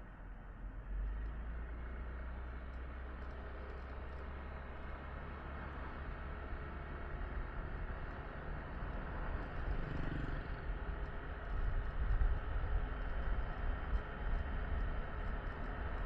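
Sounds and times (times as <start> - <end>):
road and engine hiss: 0.1 - 16.0
wind rumble on microphone: 7.3 - 16.0.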